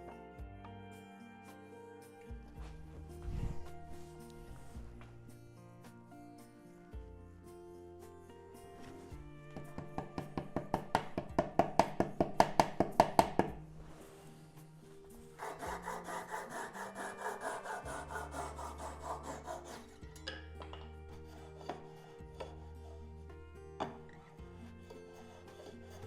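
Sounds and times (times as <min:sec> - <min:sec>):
hand saw strokes on wood: 0:14.0 - 0:23.3, 0:24.2 - 0:26.0.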